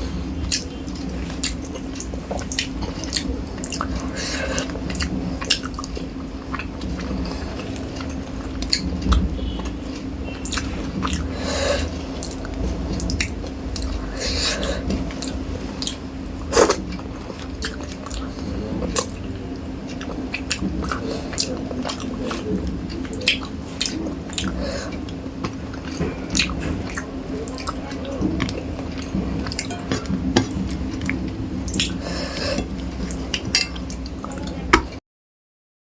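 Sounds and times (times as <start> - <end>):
person chewing food: 0.0 - 34.9
dishes clinking: 29.4 - 30.6, 33.4 - 34.0.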